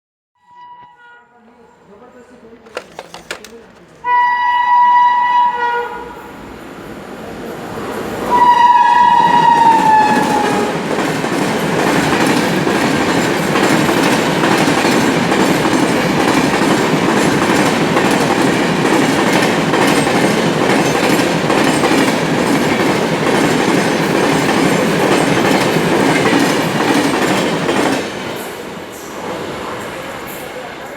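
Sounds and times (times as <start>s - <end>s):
locomotive horn: 0.4s - 1.4s, 4.0s - 6.4s, 8.3s - 10.9s
train wheels on track: 2.6s - 30.9s.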